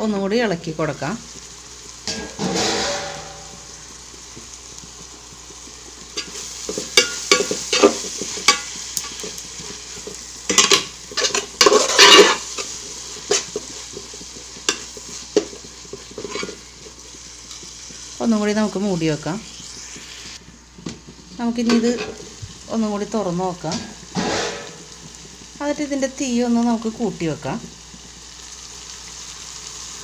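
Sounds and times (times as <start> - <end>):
low frying sizzle: 0.0 - 30.0
spoon scraping a pot: 6.2 - 18.0.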